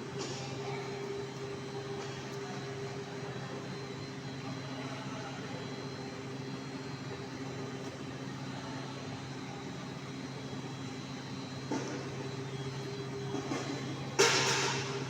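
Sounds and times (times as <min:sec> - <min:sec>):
milling machinery running: 0:00.0 - 0:15.0.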